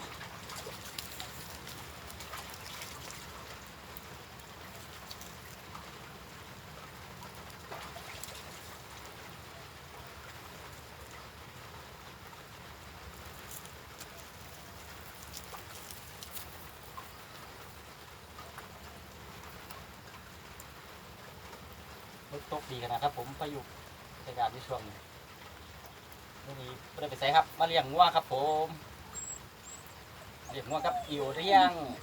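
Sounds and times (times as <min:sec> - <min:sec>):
faint drips: 0:00.0 - 0:32.0
light rain falling: 0:00.0 - 0:32.0.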